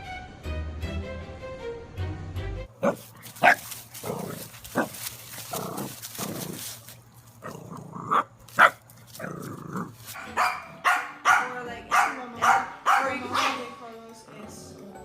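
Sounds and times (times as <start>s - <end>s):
dog barking: 2.8s - 5.0s, 8.1s - 8.8s, 10.2s - 13.8s.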